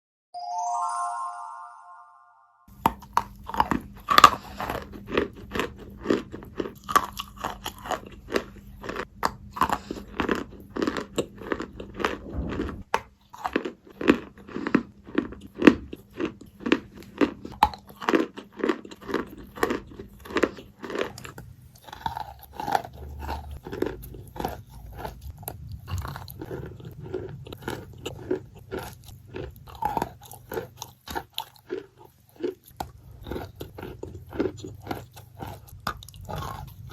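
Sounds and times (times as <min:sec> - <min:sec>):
faint low hum: 0:04.8 - 0:13.0.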